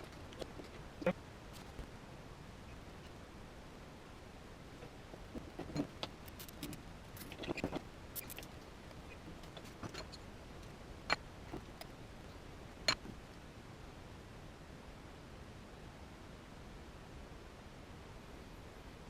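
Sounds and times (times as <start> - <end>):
small parts clicking and rattling: 5.3 - 11.9.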